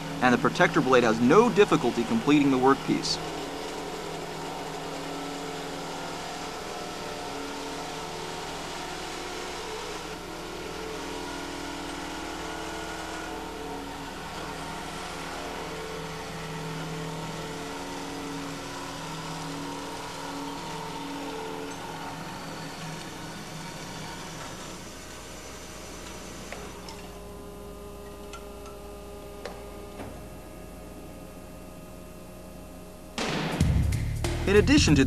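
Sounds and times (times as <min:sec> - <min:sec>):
band saw cutting steel: 0:00.0 - 0:30.0.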